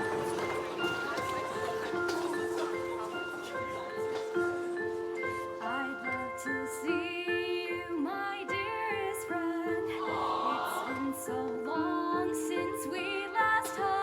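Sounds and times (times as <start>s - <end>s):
choir singing: 9.3s - 13.6s.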